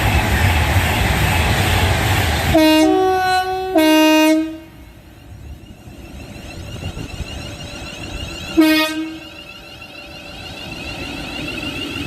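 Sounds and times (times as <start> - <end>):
train rushing by: 0.0 - 12.0
two-tone train horn: 2.5 - 4.9, 8.5 - 9.4.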